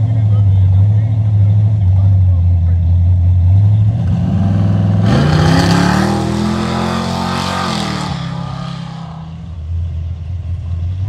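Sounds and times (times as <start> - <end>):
car engine revving: 0.0 - 11.0.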